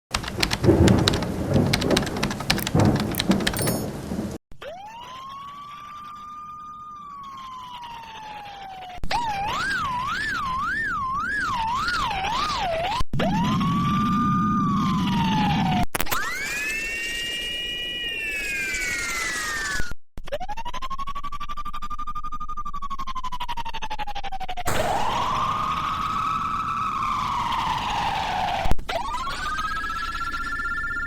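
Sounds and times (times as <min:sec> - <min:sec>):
crackling clicking burst: 0:00.1 - 0:04.3
fire truck siren wailing: 0:04.7 - 0:12.4, 0:24.7 - 0:31.0.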